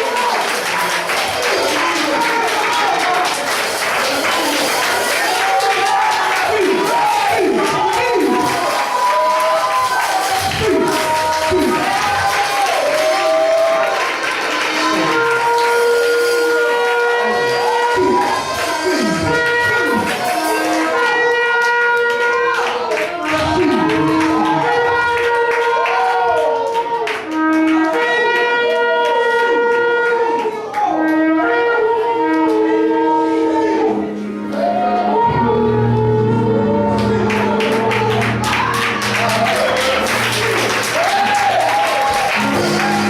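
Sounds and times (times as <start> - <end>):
shofars blowing long blasts: 14.8 - 22.2.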